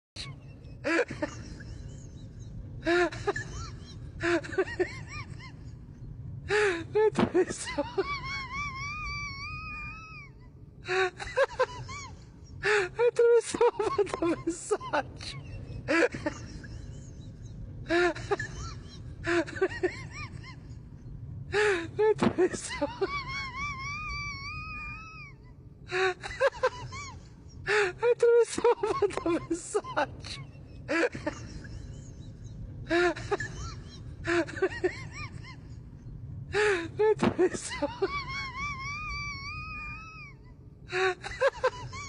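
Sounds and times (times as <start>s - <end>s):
person laughing: 10.9s - 17.0s, 25.9s - 35.8s, 36.5s - 40.0s.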